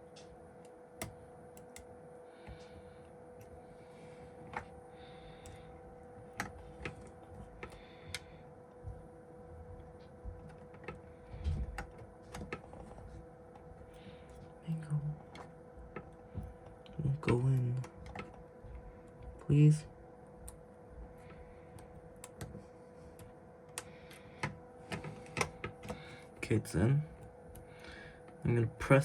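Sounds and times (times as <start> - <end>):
faint steady hum: 0.0 - 29.0
connector clicks and taps: 1.0 - 1.9.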